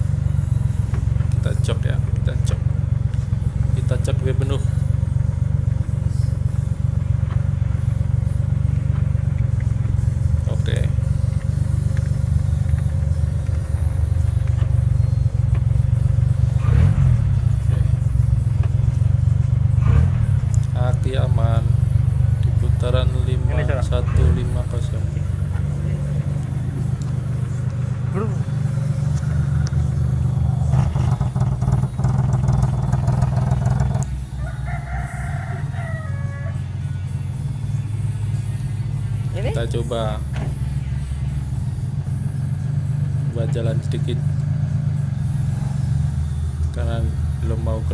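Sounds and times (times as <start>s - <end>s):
car engine idling: 0.0s - 47.9s
rooster crowing: 34.2s - 37.2s.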